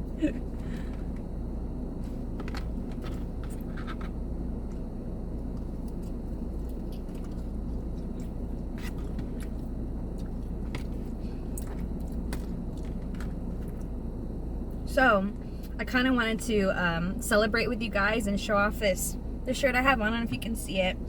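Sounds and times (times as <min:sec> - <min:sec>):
steady low hum: 0:00.0 - 0:21.0
chewing: 0:05.5 - 0:13.9.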